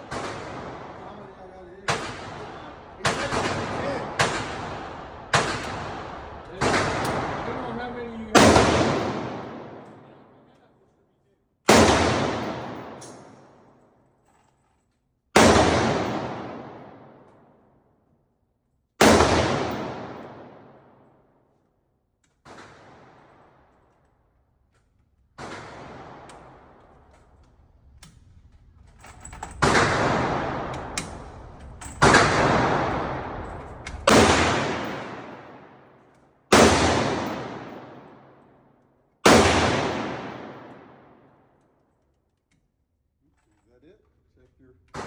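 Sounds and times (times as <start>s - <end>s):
gunshot echo: 0.0s - 10.4s, 11.7s - 13.5s, 15.4s - 17.3s, 19.0s - 21.0s, 25.4s - 26.8s, 29.6s - 38.4s, 39.2s - 41.4s.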